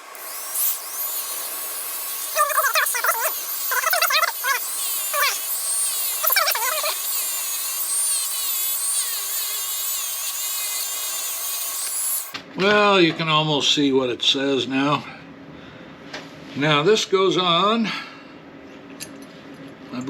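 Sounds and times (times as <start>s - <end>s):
rotary tool wire brush whining: 0.0s - 12.4s
wire brush rasping on metal: 0.1s - 12.3s.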